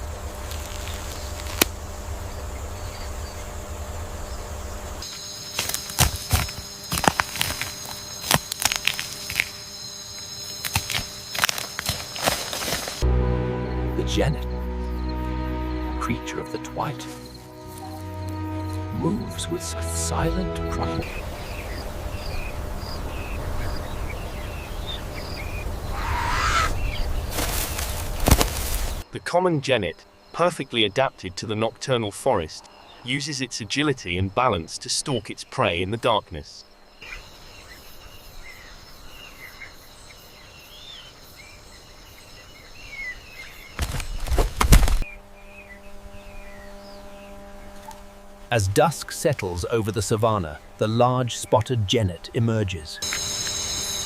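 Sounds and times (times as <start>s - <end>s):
steady low hum: 0.0s - 29.2s, 43.5s - 54.0s
high insect drone: 0.0s - 54.0s.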